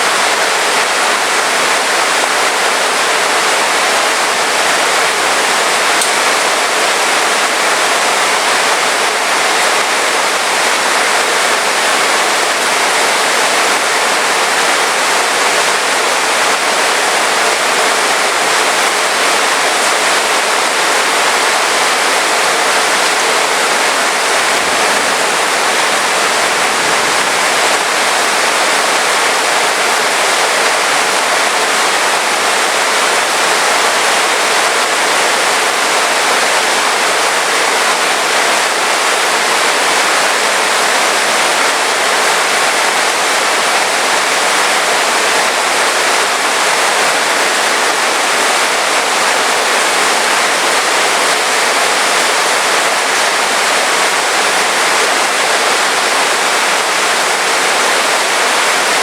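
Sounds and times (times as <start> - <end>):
heavy rain pouring: 0.0 - 59.0.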